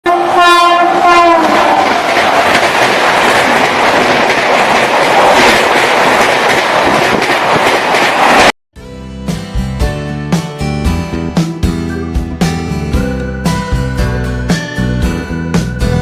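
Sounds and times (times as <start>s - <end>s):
train horn: 0.0s - 2.0s
train coaches rushing past: 0.1s - 8.5s.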